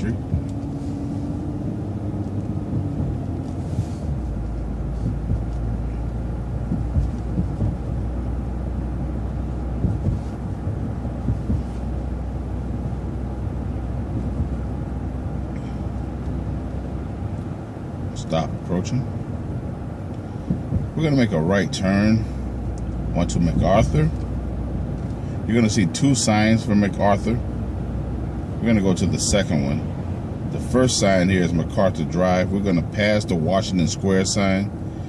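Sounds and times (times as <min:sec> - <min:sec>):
bus engine and road rumble: 0:00.0 - 0:35.0
knocks and rattles: 0:02.3 - 0:08.3.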